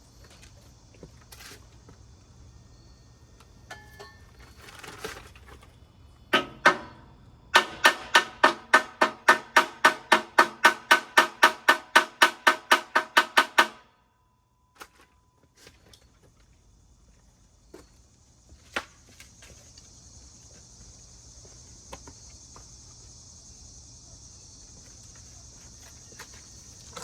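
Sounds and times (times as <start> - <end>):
high insect chirring: 16.6 - 27.0.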